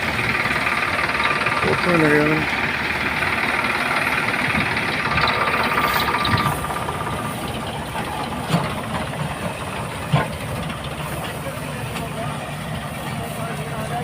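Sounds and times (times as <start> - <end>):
combine harvester running: 0.0 - 14.0.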